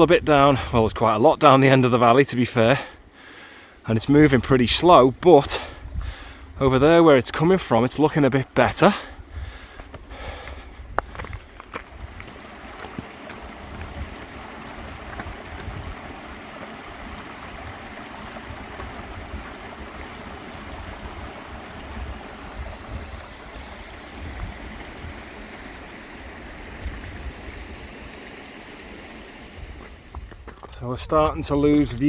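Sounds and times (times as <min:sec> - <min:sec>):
wind buffeting microphone: 0:05.6 - 0:06.9, 0:09.2 - 0:28.2.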